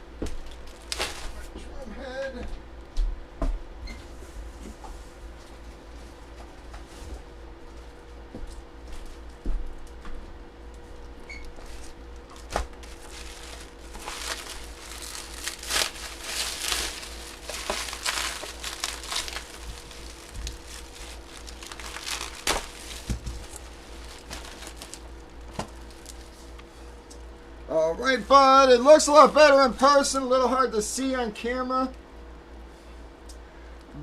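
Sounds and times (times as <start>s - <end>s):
plastic packaging crinkling: 0.4s - 1.4s, 11.6s - 26.7s.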